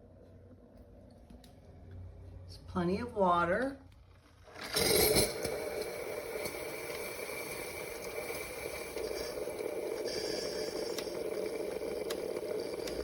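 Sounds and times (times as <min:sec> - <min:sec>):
coffee maker pump hum and hiss: 0:04.4 - 0:13.0.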